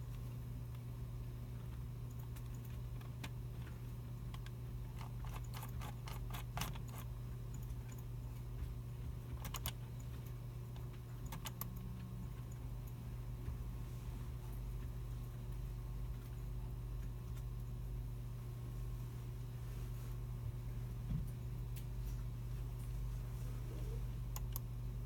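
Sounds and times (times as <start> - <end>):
steady low hum: 0.0 - 25.0
keyboard typing: 4.3 - 8.1, 9.0 - 13.0.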